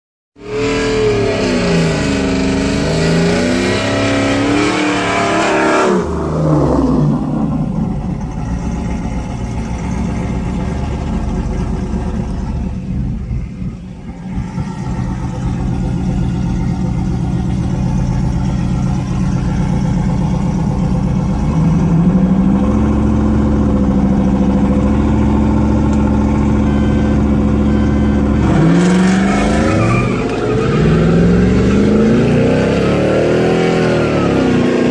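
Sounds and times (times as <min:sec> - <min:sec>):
car engine revving through gears: 0:00.4 - 0:08.3, 0:19.8 - 0:34.9.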